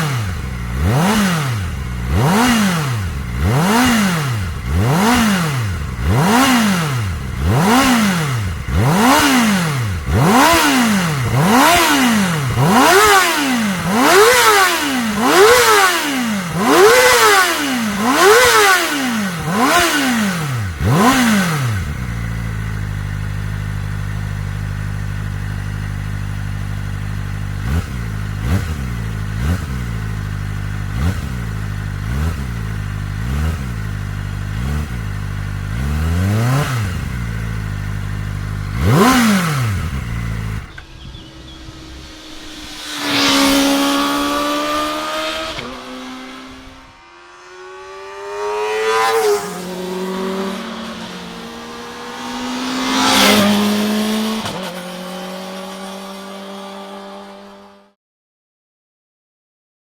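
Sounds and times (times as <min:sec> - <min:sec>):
motorcycle engine idling: 0:00.0 - 0:15.8, 0:20.6 - 0:42.6
motorcycle engine revving: 0:00.0 - 0:58.0.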